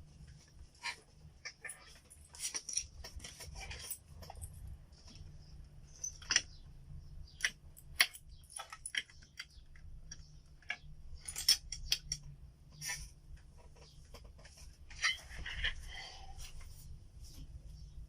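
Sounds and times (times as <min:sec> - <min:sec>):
computer parts and tools clattering: 0:00.6 - 0:05.2, 0:07.2 - 0:12.3, 0:13.4 - 0:16.7.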